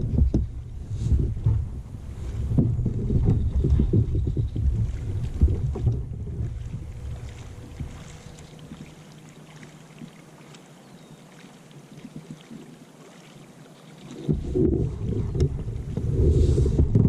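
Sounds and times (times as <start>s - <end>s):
loud low rumbling: 0.0s - 8.5s
creek water trickling: 0.0s - 16.8s
small ticks and splashes: 3.3s - 14.4s.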